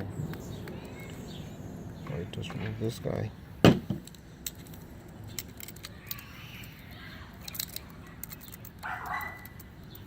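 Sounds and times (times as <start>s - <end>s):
metal clipper parts clicking: 7.4s - 9.7s.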